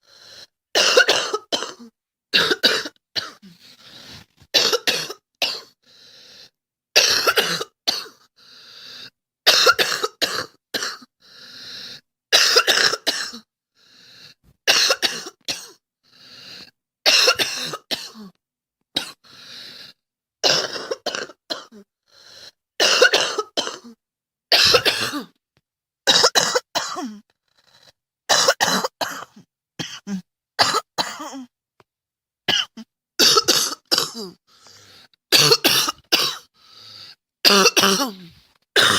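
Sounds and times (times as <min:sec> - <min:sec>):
girl coughing: 0:00.8 - 0:03.4, 0:04.6 - 0:05.7, 0:09.5 - 0:11.0, 0:17.1 - 0:18.3, 0:22.8 - 0:24.0, 0:24.6 - 0:25.3, 0:26.1 - 0:27.2, 0:28.3 - 0:31.5, 0:32.5 - 0:34.4, 0:35.4 - 0:36.5, 0:37.5 - 0:38.9.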